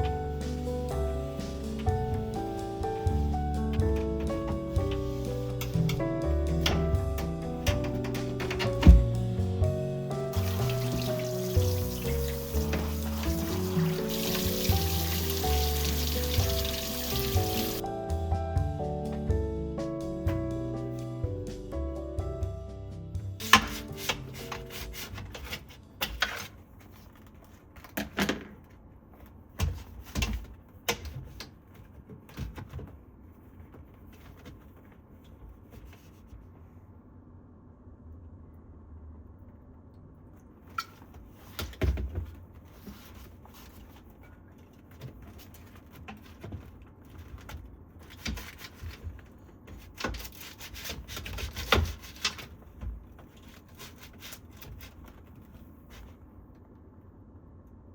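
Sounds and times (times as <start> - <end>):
household items knocking and clattering: 0.0 - 17.8.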